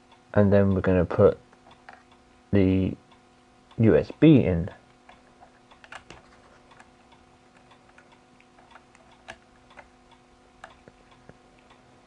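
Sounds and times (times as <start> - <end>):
faint steady hum: 0.0 - 12.0
cable clicks and taps: 5.1 - 6.9.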